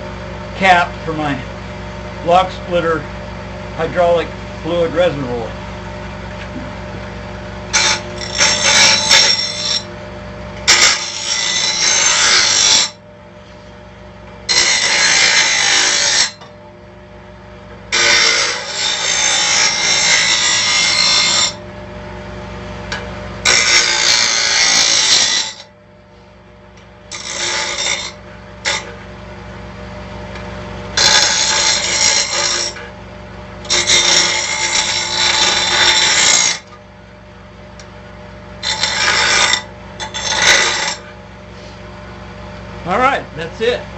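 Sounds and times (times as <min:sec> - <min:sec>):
bench grinder motor running: 0:06.9 - 0:13.0, 0:14.4 - 0:16.4, 0:17.9 - 0:22.3, 0:23.2 - 0:25.7, 0:27.1 - 0:29.7, 0:30.3 - 0:36.8, 0:38.5 - 0:41.2.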